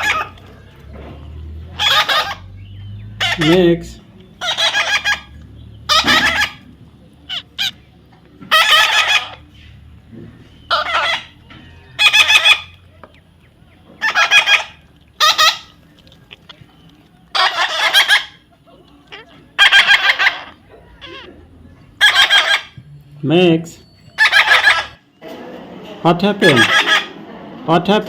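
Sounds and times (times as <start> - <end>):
parrot squawking: 0.0 - 0.4, 1.7 - 7.8, 8.5 - 9.5, 10.6 - 12.8, 14.0 - 21.4, 22.0 - 22.9, 23.8 - 25.0, 26.4 - 27.2
parrot chirps: 4.4 - 6.7, 7.3 - 7.8, 8.5 - 9.4, 10.6 - 12.8, 14.0 - 21.3, 22.0 - 23.0, 23.8 - 25.0.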